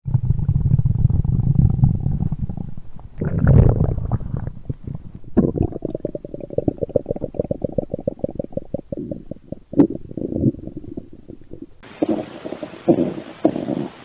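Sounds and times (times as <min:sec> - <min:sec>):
stomach growling: 0:00.0 - 0:14.0.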